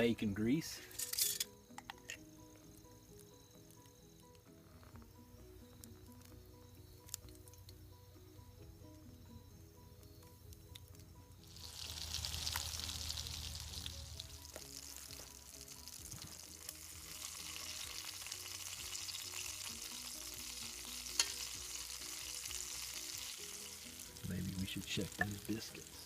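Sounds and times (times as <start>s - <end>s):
soft background music: 0.0s - 26.0s
bacon grease sizzling in skillet: 11.4s - 26.0s.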